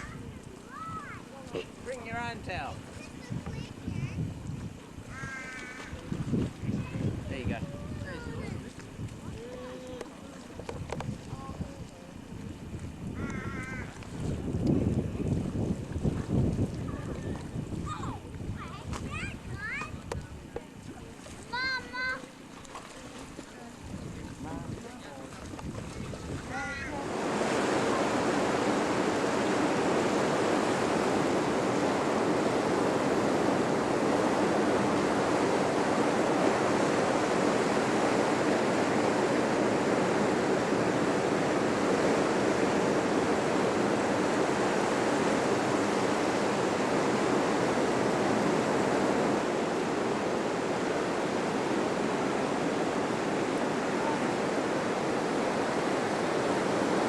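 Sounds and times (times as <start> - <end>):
ocean surf breaking: 25.8 - 57.0.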